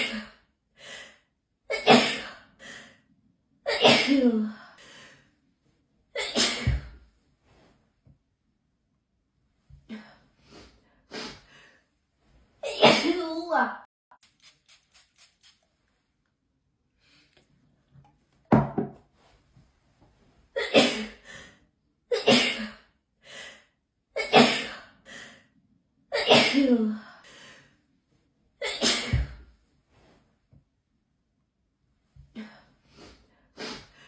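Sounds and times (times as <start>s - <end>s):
person sneezing: 1.7s - 2.4s, 6.2s - 7.0s, 28.6s - 29.4s.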